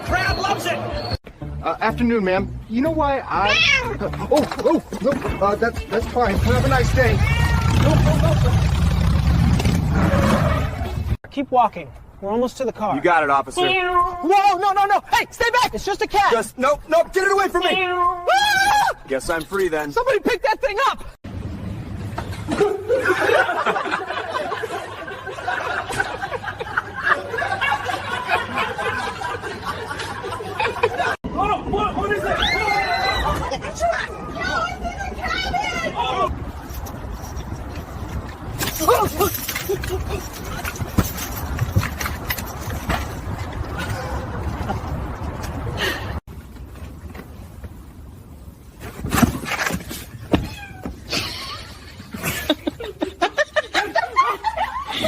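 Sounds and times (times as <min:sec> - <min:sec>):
people laughing and chattering: 0:00.0 - 0:01.2, 0:03.7 - 0:08.8, 0:22.4 - 0:37.0
cat meowing and yowling: 0:50.4 - 0:50.9.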